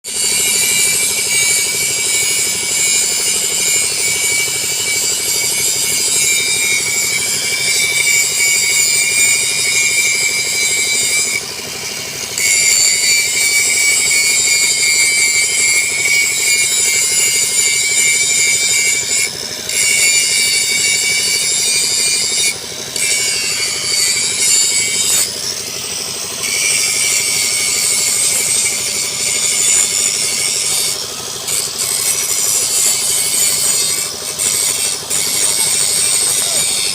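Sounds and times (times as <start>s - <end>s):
angle grinder whining: 0.1s - 36.9s.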